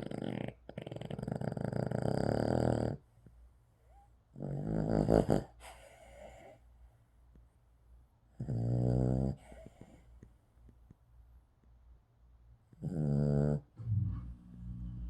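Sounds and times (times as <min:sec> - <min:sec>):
dog snoring: 0:00.0 - 0:03.0, 0:04.4 - 0:06.6, 0:08.4 - 0:10.0, 0:12.7 - 0:13.7.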